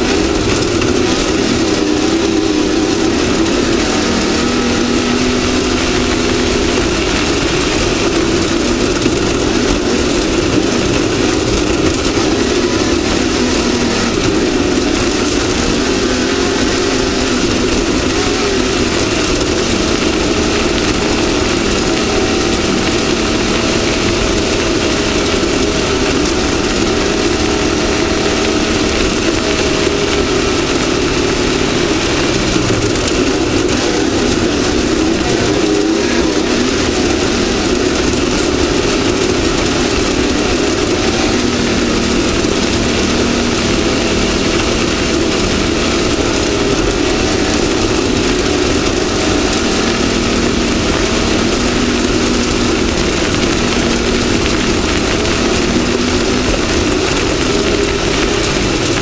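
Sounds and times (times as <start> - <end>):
engine revving under load: 0.0 - 59.0
rushing and rattling noise: 0.0 - 59.0.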